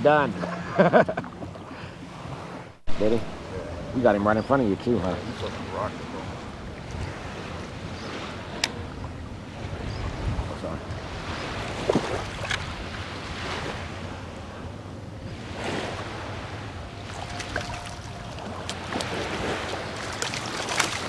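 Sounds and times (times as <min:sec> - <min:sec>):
water sloshing and splashing: 0:01.2 - 0:21.0
wind buffeting microphone: 0:01.4 - 0:21.0
small splashes: 0:11.3 - 0:13.8, 0:17.0 - 0:21.0.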